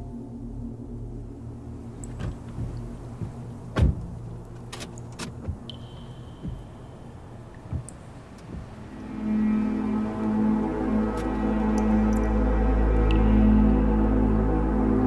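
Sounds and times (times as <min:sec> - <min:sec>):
low hum: 0:00.0 - 0:15.0
knocks and clunks: 0:02.0 - 0:09.1
faint high whine: 0:05.6 - 0:15.0.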